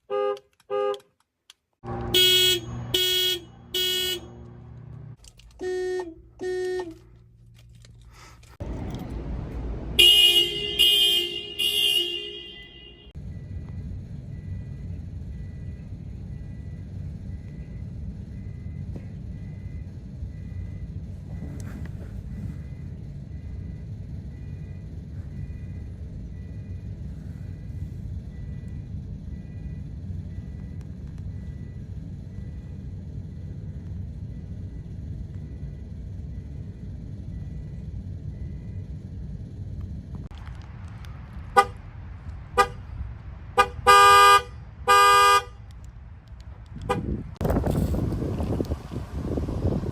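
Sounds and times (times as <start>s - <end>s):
low rumble of outdoor noise: 0.0s - 49.9s
low rumble: 7.1s - 10.4s
faint car alarm beeping: 10.0s - 21.5s, 22.2s - 39.1s.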